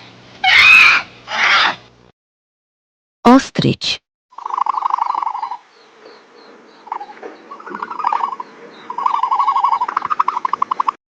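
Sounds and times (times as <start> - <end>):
ostrich calling trill: 0.4 - 1.8, 4.4 - 5.9, 6.8 - 11.0.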